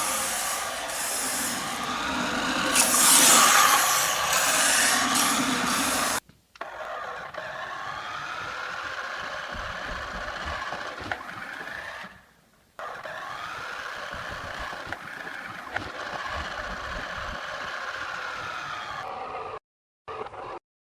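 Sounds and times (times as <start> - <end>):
loud scraping noise: 0.0 - 6.2
toy car electric motor whining: 0.0 - 20.6.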